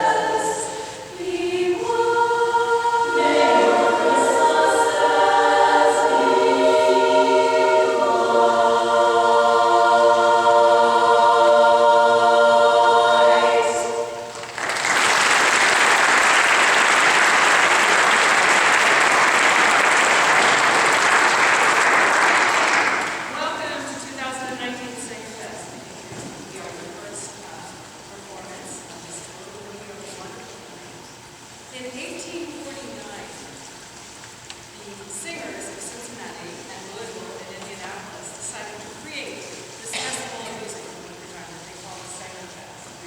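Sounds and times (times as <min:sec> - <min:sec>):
a cappella chorus singing: 0:00.0 - 0:14.6
audience applause: 0:14.3 - 0:23.3.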